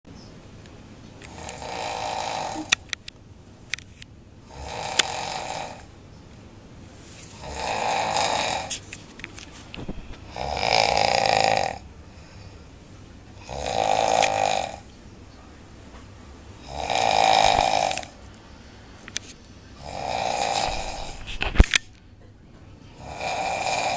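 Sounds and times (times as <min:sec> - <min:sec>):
person snoring: 0:01.3 - 0:02.8, 0:04.4 - 0:05.9, 0:07.3 - 0:08.8, 0:10.3 - 0:12.6, 0:13.4 - 0:14.9, 0:16.6 - 0:18.2, 0:19.8 - 0:21.4, 0:22.9 - 0:23.9
quiet breathing: 0:06.8 - 0:21.6.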